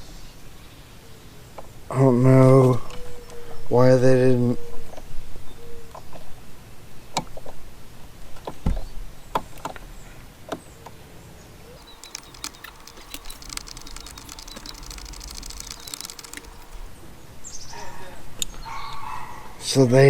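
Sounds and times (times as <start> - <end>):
hands rustling wires and connectors: 11.8 - 16.9
light clicks and taps: 11.8 - 16.9.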